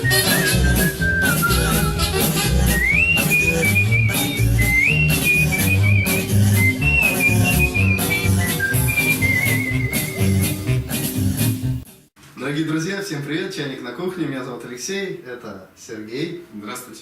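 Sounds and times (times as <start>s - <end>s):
whistled melody with vibrato: 0.0s - 10.8s
bass line: 0.0s - 11.8s
steady drum beat: 0.0s - 11.9s.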